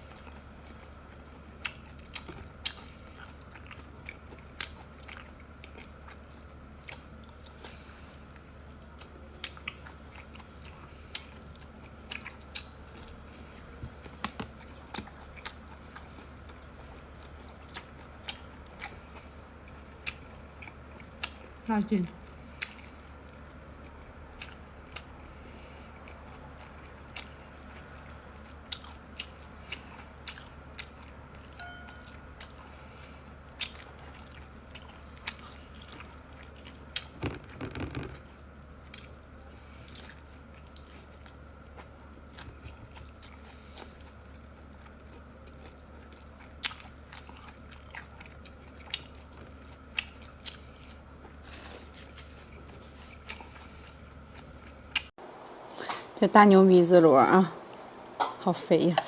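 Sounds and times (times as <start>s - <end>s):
close chewing and biting: 0.0s - 55.1s
steady low hum: 0.0s - 59.0s.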